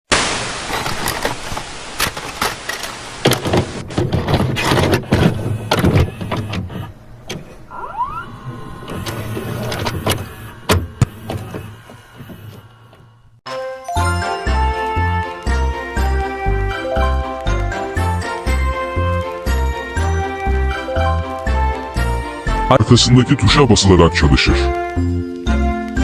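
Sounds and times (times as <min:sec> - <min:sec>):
short rising whine: 0:07.7 - 0:13.4
small motor whirring: 0:07.7 - 0:13.4.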